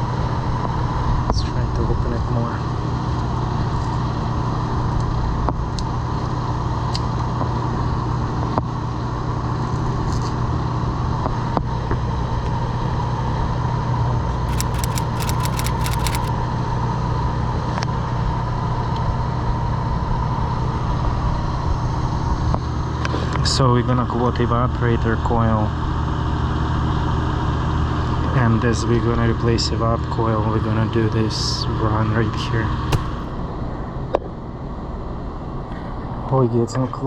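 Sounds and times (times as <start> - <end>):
sharp clicks: 14.5 - 16.3.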